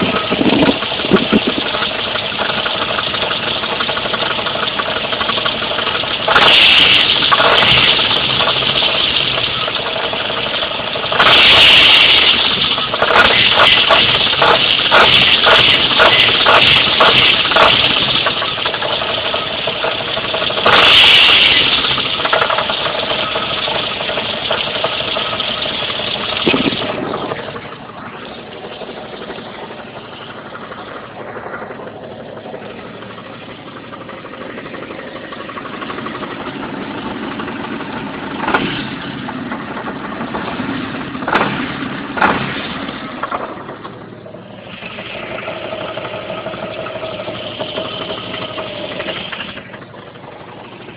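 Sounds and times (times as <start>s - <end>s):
engine running with rattling knock: 0.0s - 50.9s.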